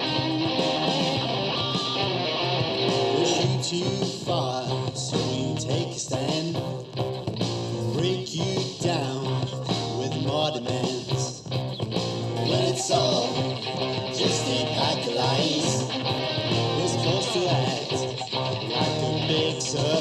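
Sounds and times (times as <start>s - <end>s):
guitar-driven rock music: 0.0s - 20.0s
person singing: 0.0s - 20.0s.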